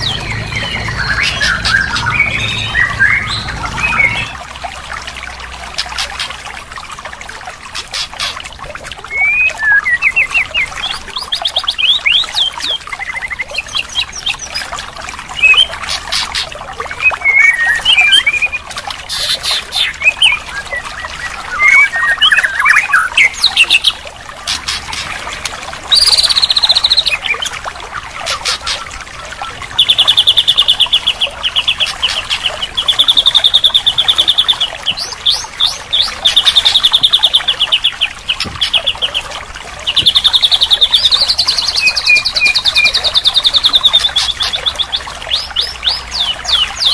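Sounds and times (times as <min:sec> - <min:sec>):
songbird whistling and trilling: 0:00.0 - 0:04.4, 0:09.1 - 0:14.7, 0:15.4 - 0:15.8, 0:16.9 - 0:24.0, 0:25.9 - 0:27.4, 0:29.4 - 0:39.3, 0:39.9 - 0:46.9.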